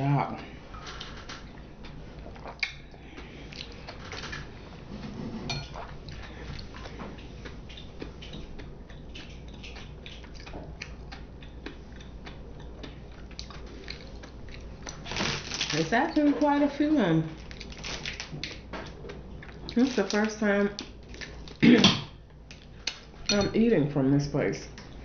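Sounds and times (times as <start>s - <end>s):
person chewing: 0.4s - 4.8s, 5.7s - 15.8s, 17.4s - 21.6s.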